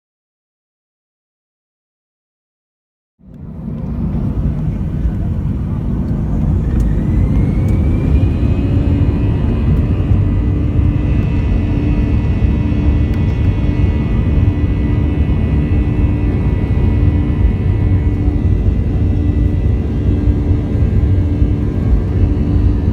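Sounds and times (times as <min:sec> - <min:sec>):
jet engine rumble and whine: 0:03.2 - 0:22.9.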